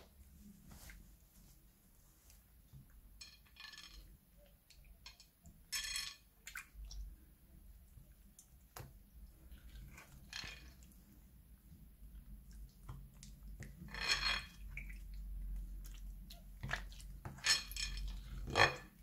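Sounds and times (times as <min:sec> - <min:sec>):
slime squelching: 0:06.4 - 0:19.0.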